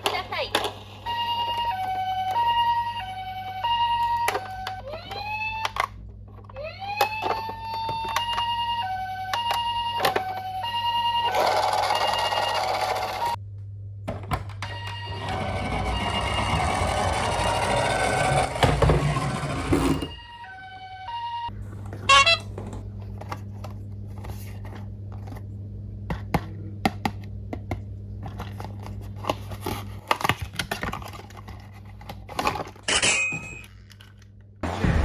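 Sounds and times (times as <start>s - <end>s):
toy electronic siren: 1.0s - 13.4s, 14.6s - 21.5s, 22.1s - 22.4s.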